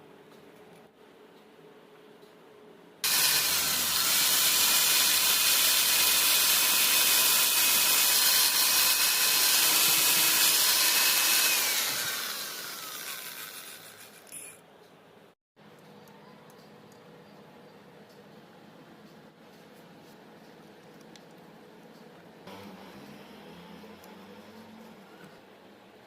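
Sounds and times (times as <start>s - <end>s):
blender motor whining: 3.0s - 14.4s, 22.5s - 25.0s.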